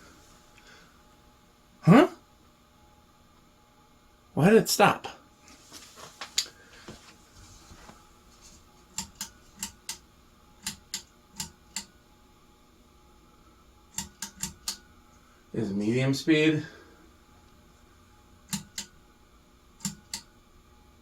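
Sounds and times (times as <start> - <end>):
fan switch clicking: 8.9 - 10.0, 10.6 - 11.9, 13.9 - 14.8, 18.5 - 19.0, 19.8 - 20.3.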